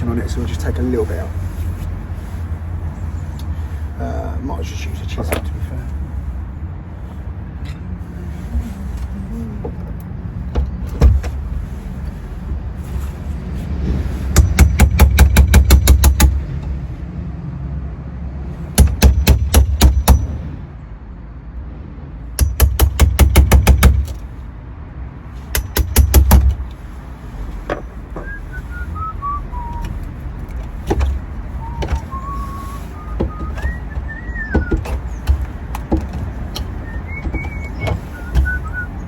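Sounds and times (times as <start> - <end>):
hammer tapping on chisel: 14.4 - 16.4, 22.4 - 24.2, 25.5 - 26.6, 33.2 - 38.5
scattered knocks: 14.4 - 16.4, 18.8 - 20.4, 22.4 - 24.2, 25.5 - 26.6, 33.2 - 38.7
person whistling a tune: 28.2 - 29.9, 31.6 - 34.8, 36.8 - 39.0.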